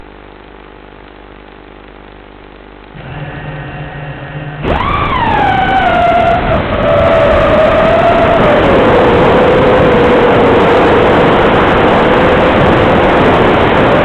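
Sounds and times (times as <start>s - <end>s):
quadcopter motors whining: 3.0s - 12.2s.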